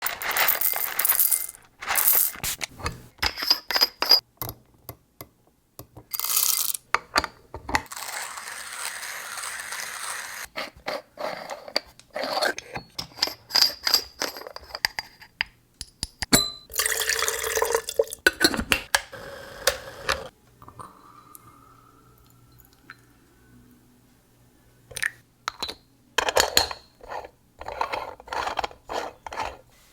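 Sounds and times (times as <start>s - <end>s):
rustling noise: 0.2s - 3.1s
moka pot clinks and scrapes: 26.2s - 29.6s.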